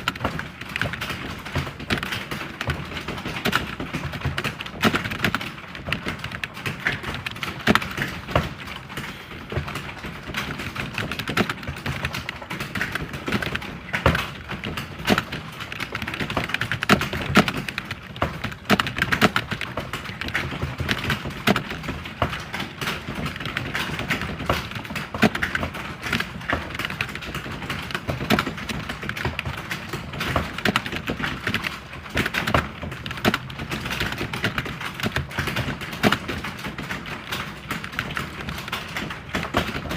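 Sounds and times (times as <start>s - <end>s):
computer keyboard typing: 0.0s - 39.9s.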